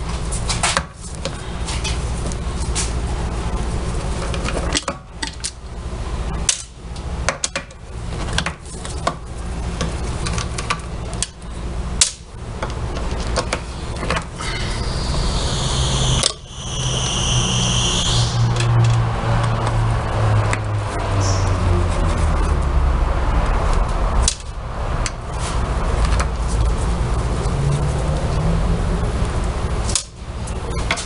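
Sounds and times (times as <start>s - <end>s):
steady low hum: 9.3s - 22.3s
high wavering whine: 13.5s - 21.5s.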